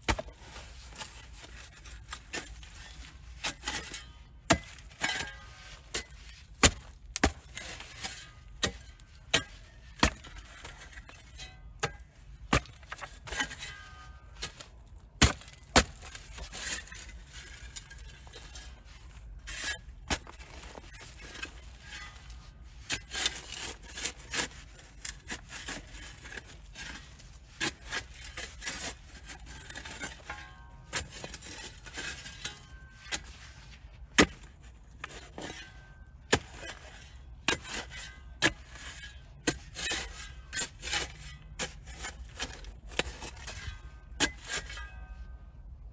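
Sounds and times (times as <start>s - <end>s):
metal tool chopping into soil: 3.4s - 10.8s, 14.4s - 17.0s, 36.3s - 36.9s.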